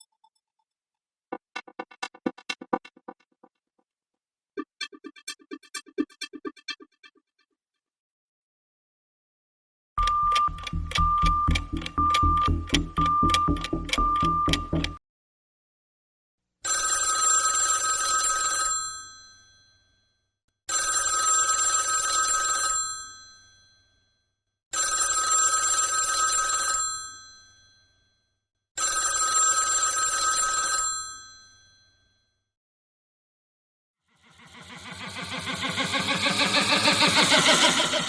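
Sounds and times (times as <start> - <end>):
telephone bell ringing: 16.7 - 19.8, 20.7 - 23.7, 24.8 - 28.0, 28.8 - 32.1.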